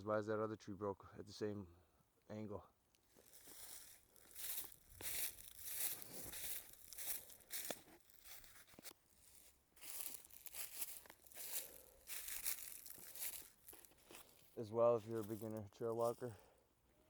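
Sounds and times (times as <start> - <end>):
footsteps crunching dry leaves: 3.1 - 16.4.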